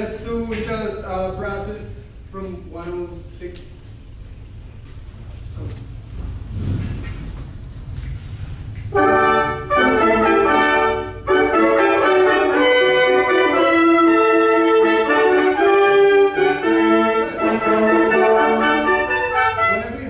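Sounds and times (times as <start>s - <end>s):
brass section playing chords: 8.9s - 20.0s.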